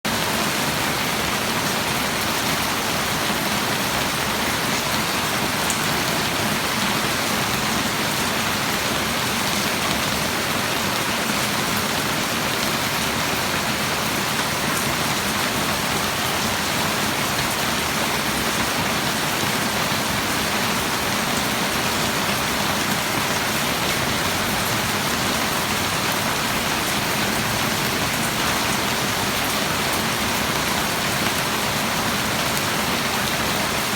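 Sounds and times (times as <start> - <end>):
steady rain falling: 0.1 - 33.9.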